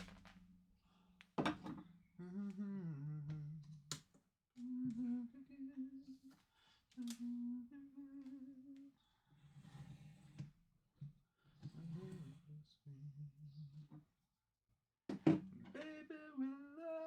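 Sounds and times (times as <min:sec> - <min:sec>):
person humming: 0:02.2 - 0:03.9, 0:04.6 - 0:06.4, 0:07.0 - 0:09.0.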